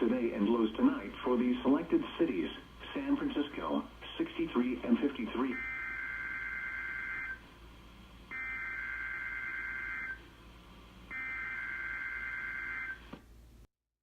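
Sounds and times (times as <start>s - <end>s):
buzzy two-tone data bursts: 5.5s - 7.4s, 8.3s - 10.2s, 11.1s - 13.0s.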